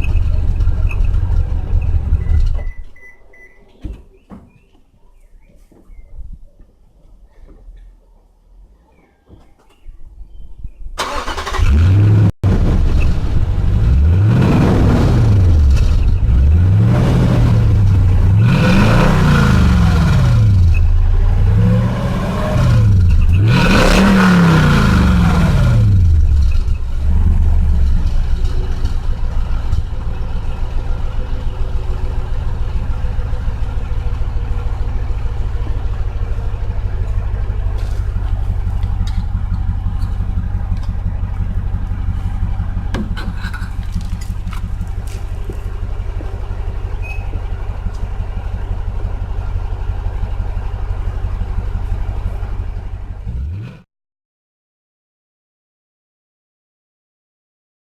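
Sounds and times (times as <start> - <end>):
car engine idling: 0.0 - 2.9, 11.0 - 53.6
car engine revving: 11.0 - 53.8.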